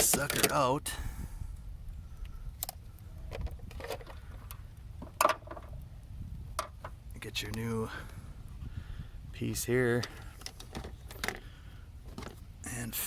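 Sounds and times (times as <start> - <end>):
plastic parts clicking and knocking: 0.0 - 0.6, 2.6 - 5.7, 10.0 - 11.4.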